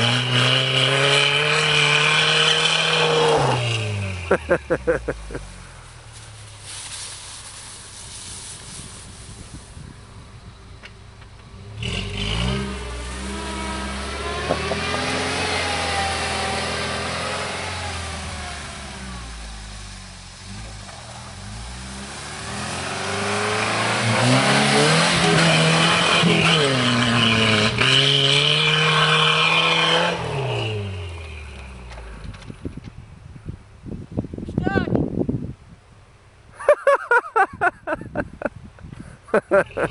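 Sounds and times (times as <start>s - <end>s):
engine revving under load: 0.0s - 5.7s, 11.4s - 32.6s.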